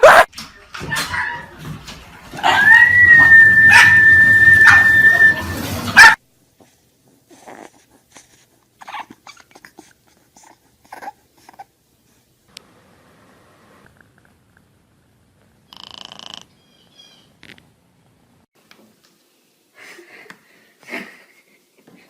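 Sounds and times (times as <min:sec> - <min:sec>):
dog barking: 0:00.0 - 0:00.3, 0:03.7 - 0:05.2, 0:06.0 - 0:06.2.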